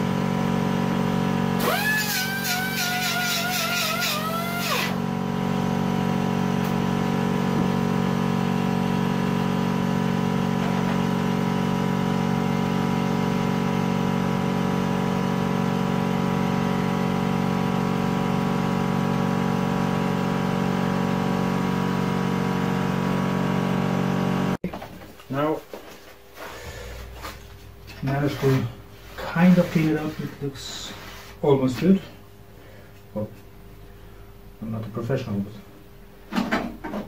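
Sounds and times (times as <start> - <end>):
steady motor hum: 0.0 - 24.9.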